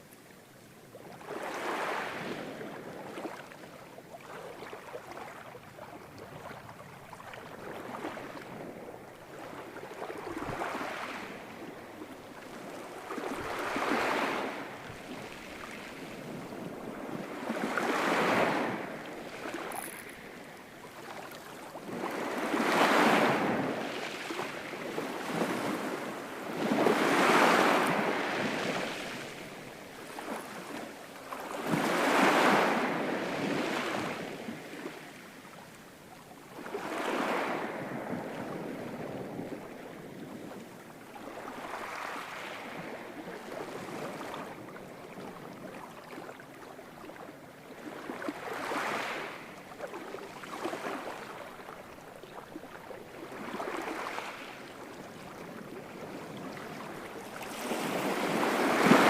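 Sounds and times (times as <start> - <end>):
ocean waves breaking: 7.6 - 35.1, 47.8 - 59.0.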